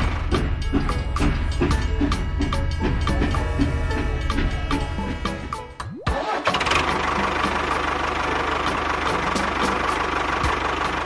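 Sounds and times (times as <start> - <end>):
motor running with low pulse: 0.6 - 5.8.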